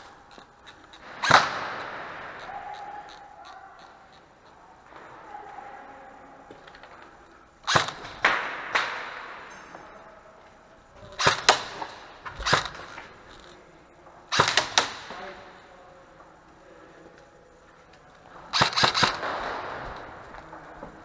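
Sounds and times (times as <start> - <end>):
airsoft gun shots echoing: 1.0 - 5.7, 7.6 - 9.9, 11.0 - 13.5, 14.3 - 15.6, 18.5 - 21.0.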